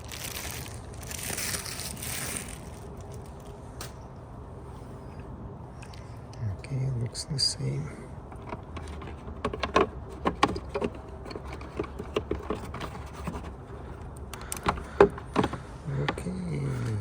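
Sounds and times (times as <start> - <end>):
steady low hum: 0.0 - 17.0
plastic parts clicking: 8.3 - 16.2.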